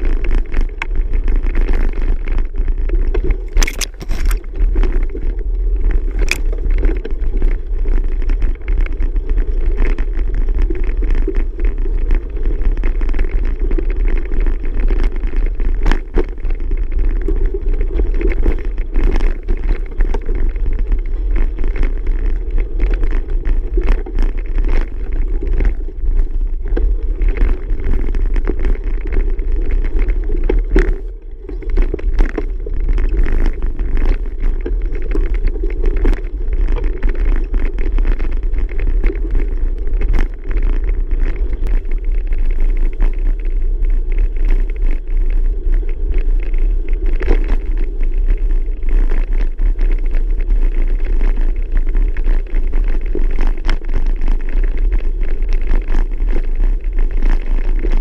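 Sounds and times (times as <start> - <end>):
bicycle knocks and rattles: 0.0 - 45.1
wind rumble on microphone: 0.0 - 58.0.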